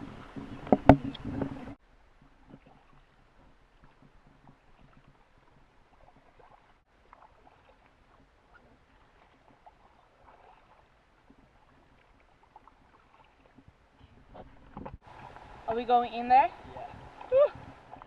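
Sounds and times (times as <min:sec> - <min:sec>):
water drips and small splashes: 0:00.0 - 0:18.0.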